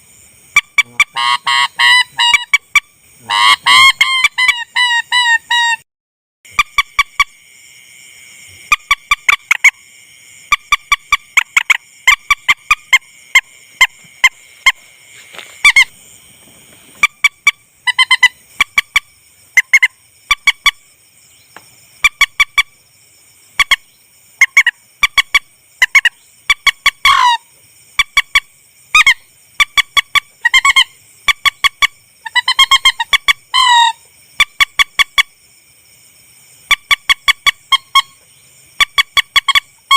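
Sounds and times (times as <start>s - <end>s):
rail bird honking calls: 0.6s - 5.8s, 27.0s - 27.4s, 32.3s - 34.0s.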